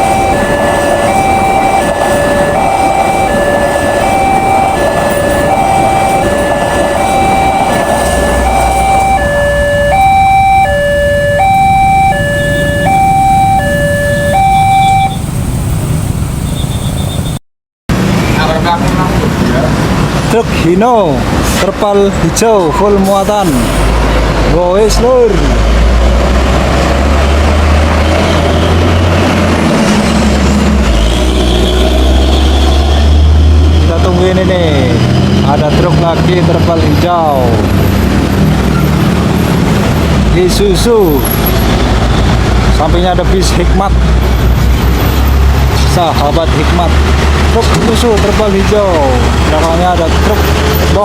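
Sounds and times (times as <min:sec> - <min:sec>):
two-tone siren: 0:00.0 - 0:15.4
heavy truck diesel drone: 0:00.0 - 0:17.1, 0:23.0 - 0:51.0
road traffic rumble: 0:00.0 - 0:51.0.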